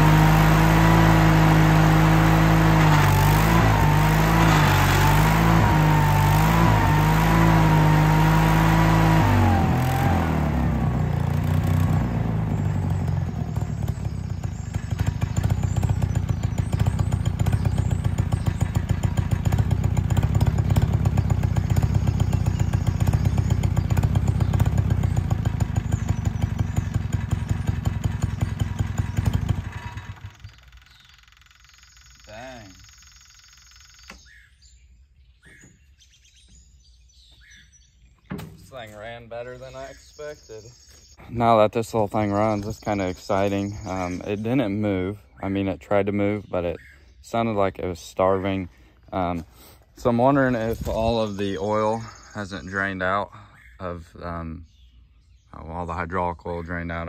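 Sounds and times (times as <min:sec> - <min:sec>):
small engine running under strain: 0:00.0 - 0:34.1.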